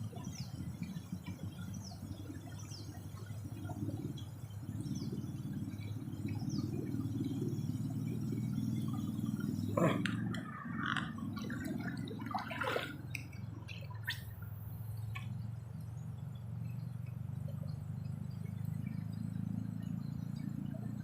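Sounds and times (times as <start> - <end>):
steady low rumble: 0.0 - 21.0
water splashes and drips: 9.4 - 15.5.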